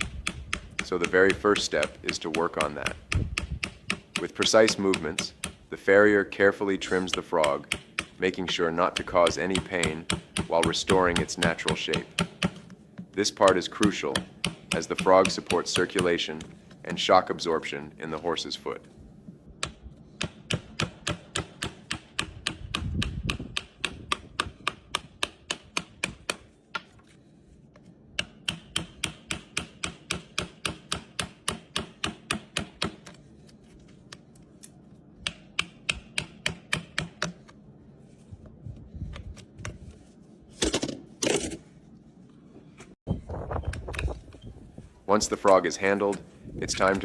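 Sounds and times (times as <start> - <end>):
hoof trimming tool clicks: 0.0 - 5.6.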